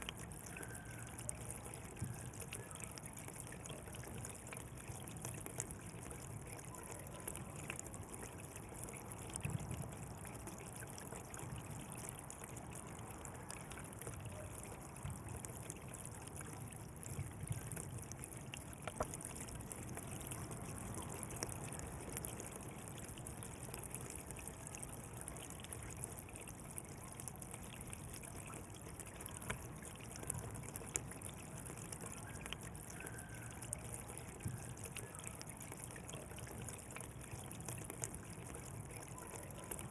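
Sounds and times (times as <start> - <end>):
water flowing and trickling: 0.0 - 39.9.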